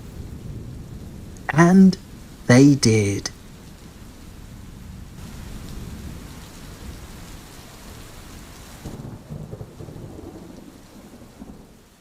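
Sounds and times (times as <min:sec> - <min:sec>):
falling rain hiss: 0:00.0 - 0:12.0.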